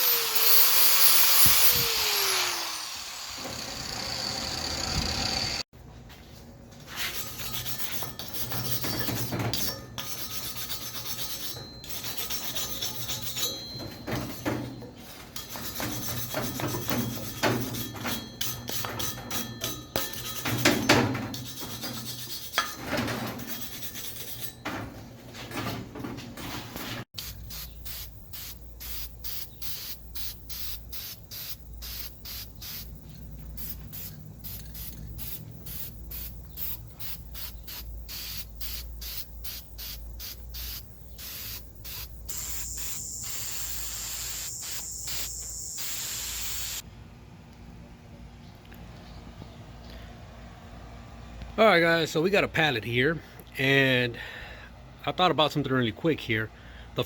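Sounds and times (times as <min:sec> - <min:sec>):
abrasive scraping on steel: 0:06.9 - 0:25.7, 0:31.8 - 0:46.8.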